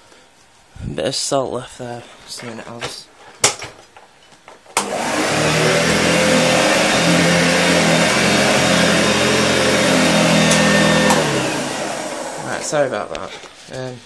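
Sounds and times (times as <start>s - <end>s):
vacuum cleaner switch click: 4.8s - 12.4s
vacuum cleaner motor running: 4.8s - 12.9s.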